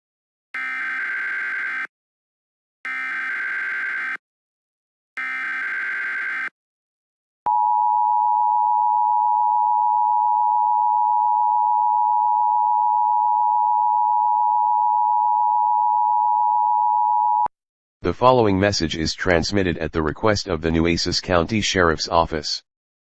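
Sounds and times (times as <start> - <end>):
two-tone alarm tone: 0.6 - 1.9, 2.9 - 4.2, 5.2 - 6.6, 7.5 - 17.5
warbling data tones: 5.2 - 6.5.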